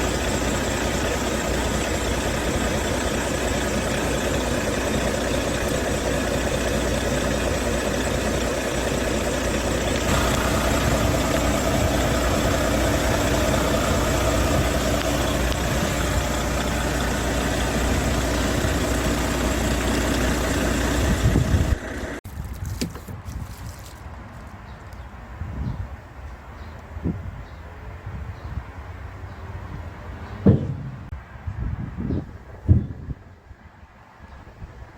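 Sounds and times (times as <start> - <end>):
diesel engine idling: 0.0 - 22.2.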